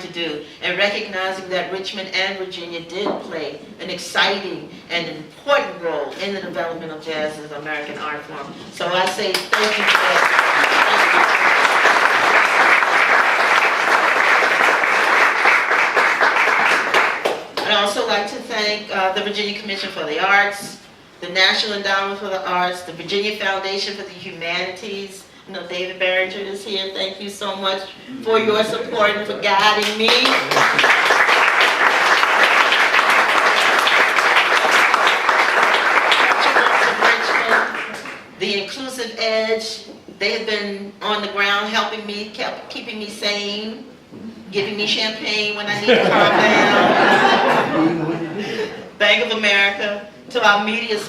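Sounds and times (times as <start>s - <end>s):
audience applauding: 9.4s - 17.6s, 29.8s - 38.3s.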